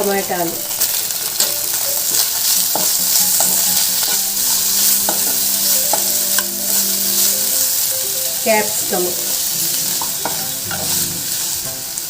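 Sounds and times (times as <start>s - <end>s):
vegetables sizzling in oil: 0.0s - 12.0s.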